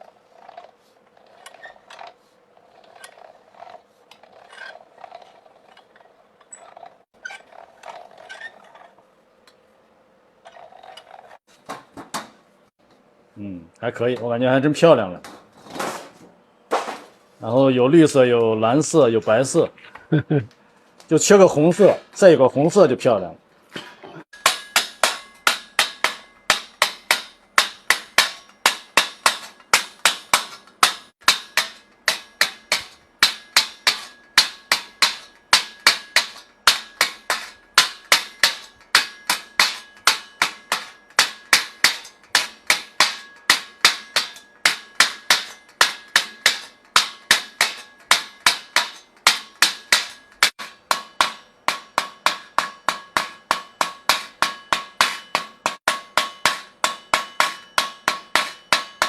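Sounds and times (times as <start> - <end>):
hammer striking metal: 24.3 - 59.0.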